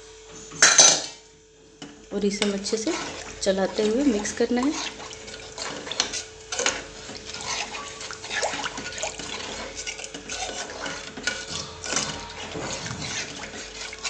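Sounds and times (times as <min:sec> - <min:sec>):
spoon clinking and scraping a pan: 0:00.6 - 0:01.2, 0:02.4 - 0:14.0
liquid swirling in a pan: 0:00.6 - 0:14.0.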